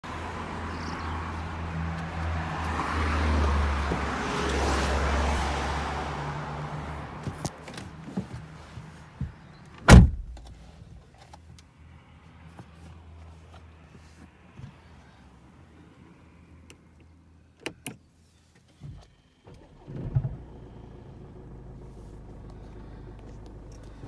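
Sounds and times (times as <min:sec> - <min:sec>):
car engine humming: 0:00.0 - 0:10.7, 0:19.5 - 0:24.0
loud sharp thump: 0:09.9 - 0:10.6.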